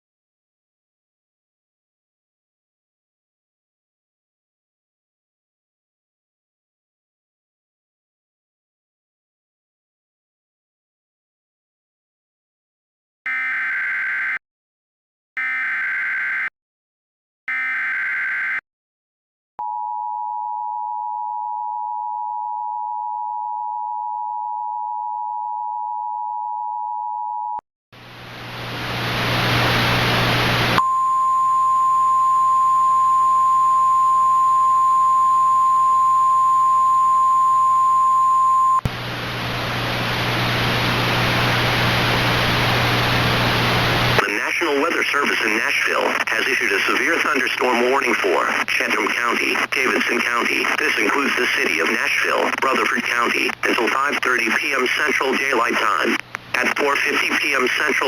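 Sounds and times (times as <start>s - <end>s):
radio static: 29.0s - 30.8s, 40.2s - 58.0s
steady warning tone: 30.8s - 38.8s
two-tone attention signal: 30.8s - 38.8s.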